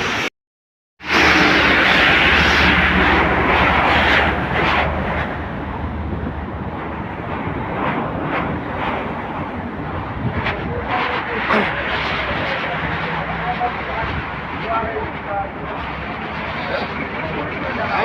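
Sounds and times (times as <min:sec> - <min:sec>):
heavy rain pouring: 0:01.0 - 0:06.0.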